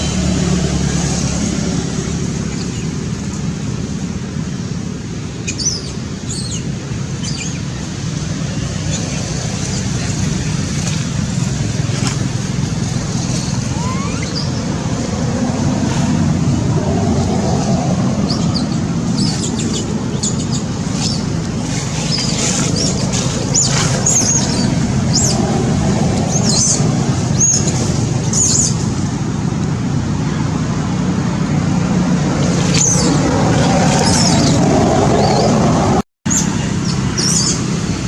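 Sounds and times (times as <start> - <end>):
low rumble of traffic: 0.0 - 38.0
high-pitched chirps and squeaks: 13.3 - 14.6.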